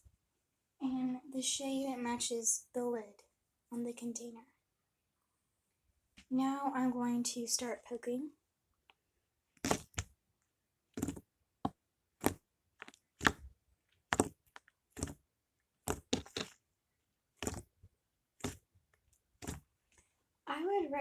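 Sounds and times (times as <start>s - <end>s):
squishy slime pops: 9.6s - 10.1s, 12.2s - 13.5s, 14.1s - 15.2s, 15.9s - 16.6s, 17.4s - 17.7s, 18.4s - 18.6s, 19.4s - 19.6s.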